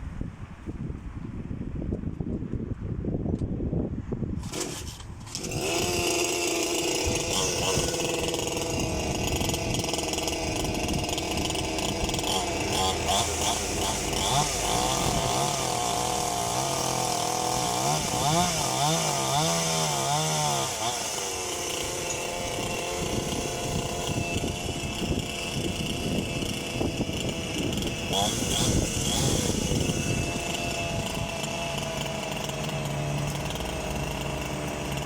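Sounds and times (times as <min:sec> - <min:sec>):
chainsaw engine revving: 0:04.4 - 0:35.0.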